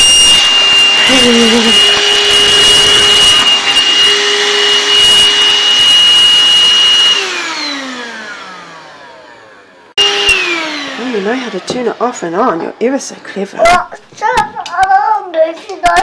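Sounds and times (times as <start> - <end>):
motor winding down: 0.0 - 12.6
vacuum cleaner whining: 0.0 - 14.4.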